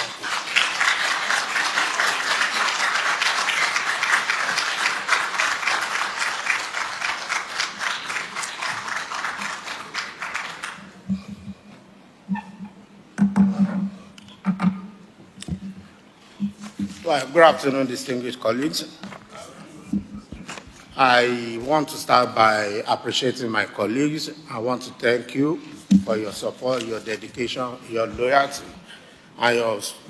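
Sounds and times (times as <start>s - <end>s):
audience applauding: 0.0s - 11.0s.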